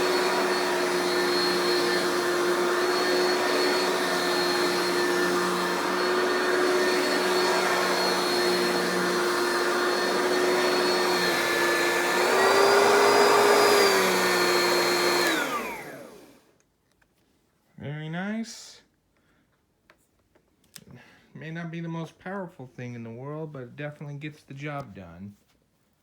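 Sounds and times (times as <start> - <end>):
vacuum motor spinning down: 0.0 - 16.4
vacuum cleaner motor whine: 0.0 - 16.5.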